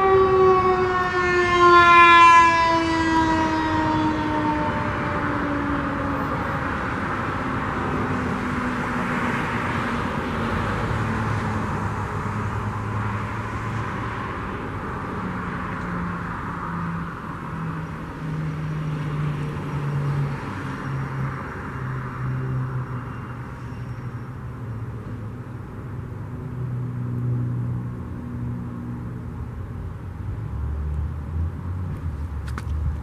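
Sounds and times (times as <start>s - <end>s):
electromechanical siren winding down: 0.0s - 6.2s
road traffic noise: 0.0s - 33.0s.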